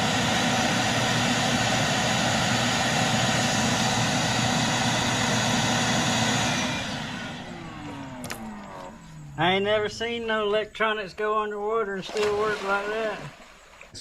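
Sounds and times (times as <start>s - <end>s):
electric motor whining: 0.0s - 10.0s.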